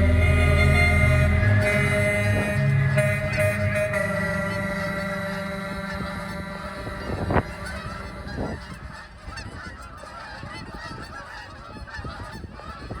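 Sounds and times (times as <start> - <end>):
held musical chord: 0.0 - 9.2
geese honking: 0.0 - 12.4.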